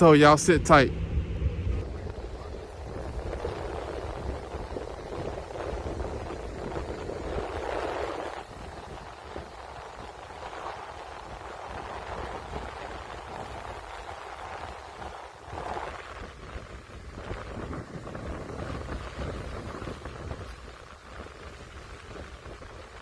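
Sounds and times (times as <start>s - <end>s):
strong wind buffeting microphone: 0.0s - 23.0s.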